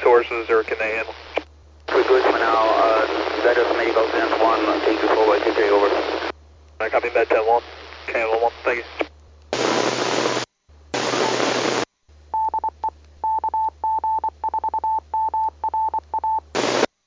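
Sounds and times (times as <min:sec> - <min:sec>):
radio static hiss: 0:00.0 - 0:11.9, 0:16.4 - 0:17.0.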